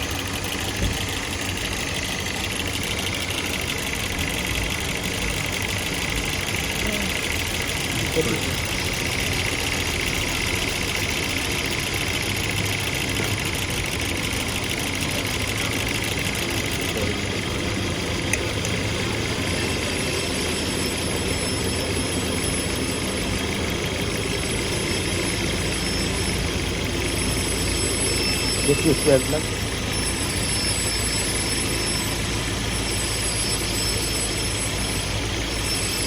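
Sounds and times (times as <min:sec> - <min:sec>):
car engine idling: 0:00.0 - 0:35.9.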